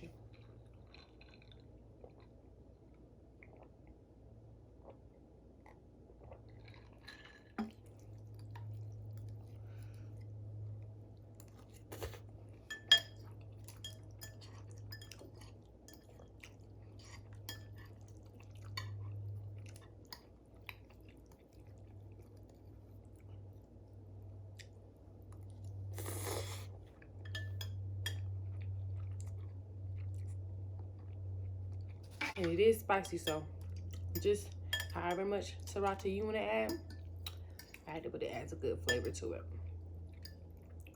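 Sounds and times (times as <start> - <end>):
chewing noodles: 0.1 - 4.0, 4.8 - 27.5, 28.1 - 32.5
utensils and glass clinking: 12.7 - 13.2.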